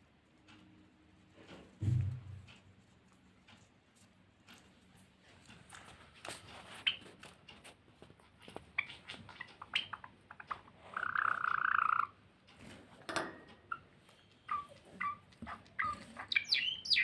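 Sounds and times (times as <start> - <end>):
finches chirping: 8.7 - 12.2, 13.6 - 17.0.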